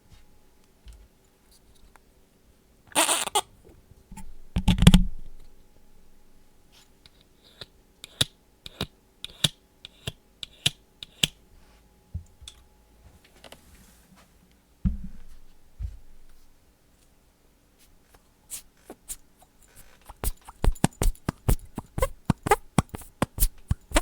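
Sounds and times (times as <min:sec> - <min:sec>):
low thud: 0:14.8 - 0:16.0.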